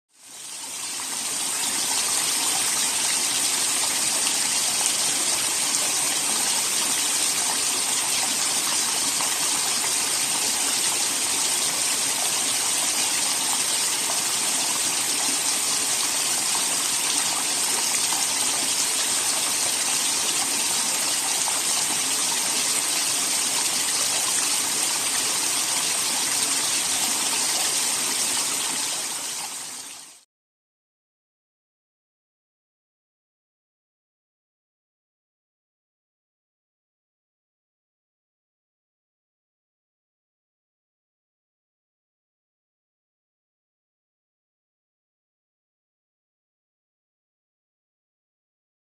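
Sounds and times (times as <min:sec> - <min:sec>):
small waterfall splashing: 0:00.2 - 0:30.2.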